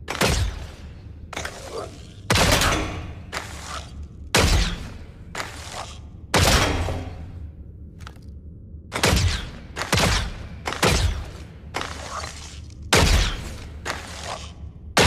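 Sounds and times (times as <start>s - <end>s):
bow shots: 1.4s - 7.3s, 8.9s - 14.5s.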